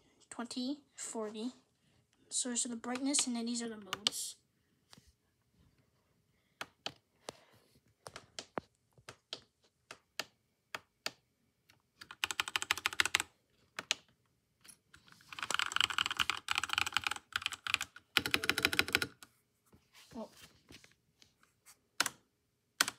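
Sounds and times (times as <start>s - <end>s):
mechanical keyboard typing: 3.8s - 4.2s, 8.1s - 14.1s, 15.2s - 19.3s.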